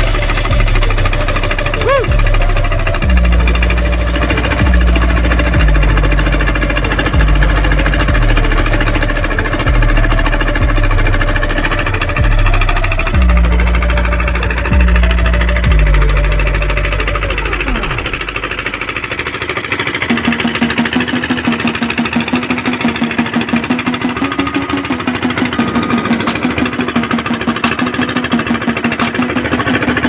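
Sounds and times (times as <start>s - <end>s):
deep bass music: 0.0s - 19.0s
diesel engine knocking: 0.0s - 30.0s.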